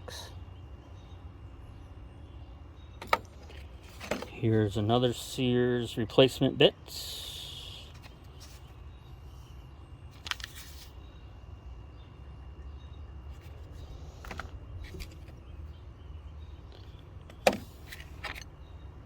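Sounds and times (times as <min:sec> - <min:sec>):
low background hum: 0:00.0 - 0:19.0
metal tools clinking: 0:17.8 - 0:18.5.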